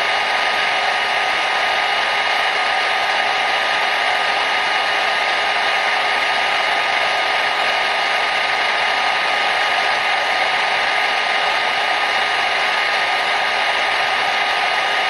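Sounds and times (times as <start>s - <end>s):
hair dryer running: 0.0s - 15.0s.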